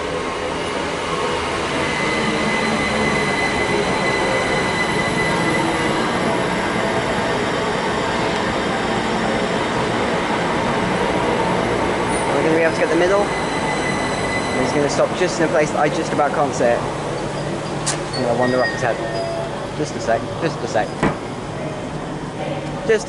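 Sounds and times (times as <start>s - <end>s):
train wheels rumbling: 0.0s - 23.0s
high-pitched brake squeal: 1.6s - 6.6s, 12.1s - 19.7s.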